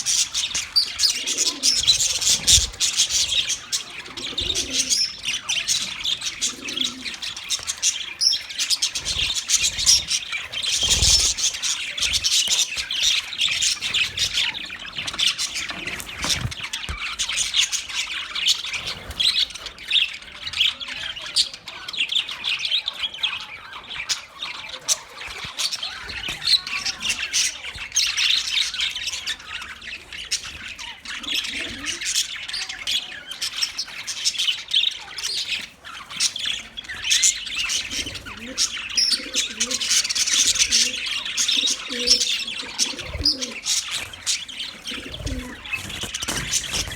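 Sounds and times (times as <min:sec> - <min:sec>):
budgerigars chirping and squawking: 0:00.0 - 0:46.9.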